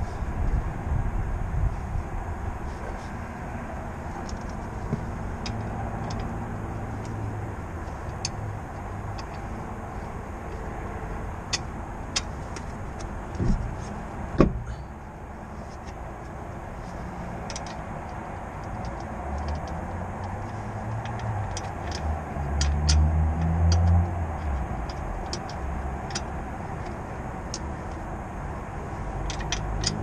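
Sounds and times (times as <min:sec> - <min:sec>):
tyre and road rumble: 0:00.0 - 0:30.0
heavy thump: 0:13.3 - 0:13.7, 0:14.3 - 0:14.7.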